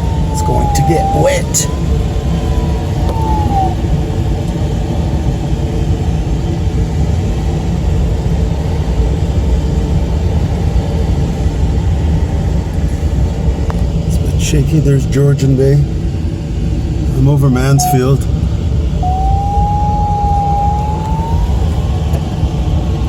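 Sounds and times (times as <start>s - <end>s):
variometer tone sliding down: 0.0s - 4.0s, 17.6s - 18.2s, 19.0s - 21.8s
airflow rushing past cockpit: 0.0s - 4.9s, 18.9s - 22.1s.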